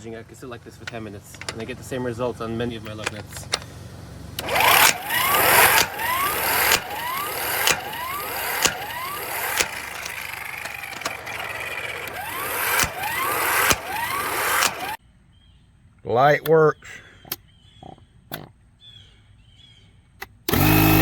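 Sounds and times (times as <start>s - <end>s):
impact wrench hammering: 4.4s - 15.0s.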